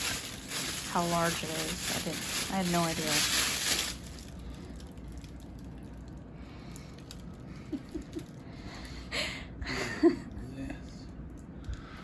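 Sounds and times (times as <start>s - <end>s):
handling noises: 0.0s - 4.3s.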